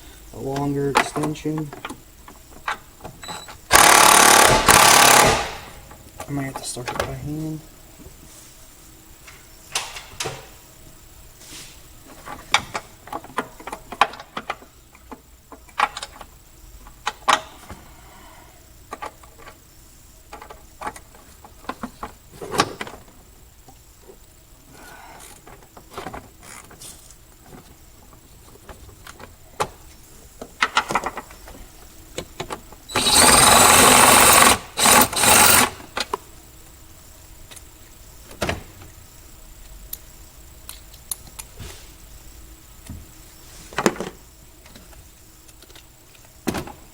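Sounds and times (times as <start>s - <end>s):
power tool running: 3.7s - 5.8s, 32.9s - 36.0s.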